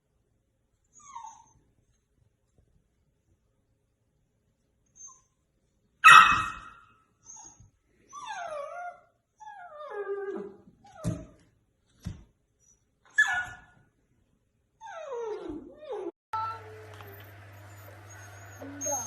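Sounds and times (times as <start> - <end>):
dog whining and yelping: 0.9 - 1.7, 6.0 - 11.4, 12.6 - 13.8, 14.8 - 16.2, 17.2 - 19.0.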